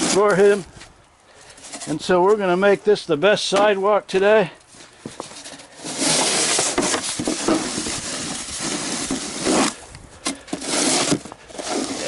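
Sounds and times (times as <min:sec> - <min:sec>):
snow shovel scraping sidewalk: 0:00.0 - 0:00.6, 0:05.1 - 0:12.0.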